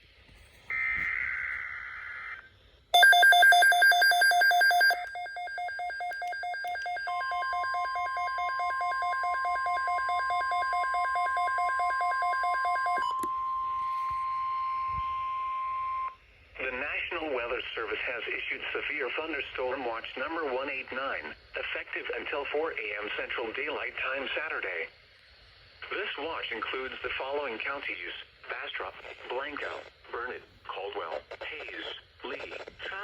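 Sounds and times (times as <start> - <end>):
rapid beeping alarm: 3.0 - 16.1
steady single-pitch warning tone: 3.0 - 16.2.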